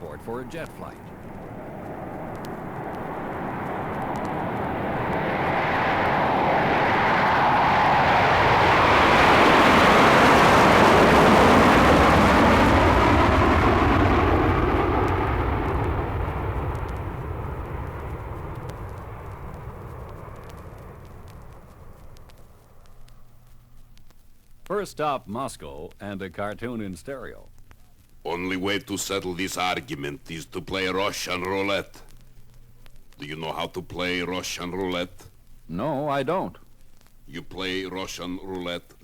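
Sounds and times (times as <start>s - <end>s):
jet aircraft passing: 0.0s - 23.4s.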